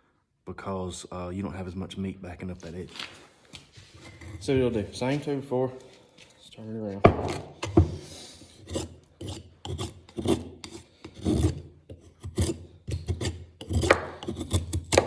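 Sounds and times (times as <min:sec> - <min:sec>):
knife whittling wood: 0:07.1 - 0:15.0.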